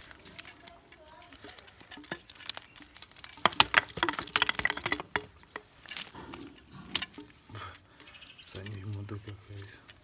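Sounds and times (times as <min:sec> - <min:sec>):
clicks of plumbing parts handled: 0:00.0 - 0:10.0.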